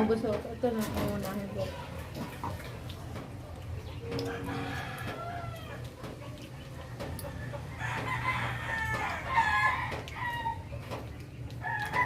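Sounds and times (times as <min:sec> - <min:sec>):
rooster crowing: 0:04.1 - 0:05.8.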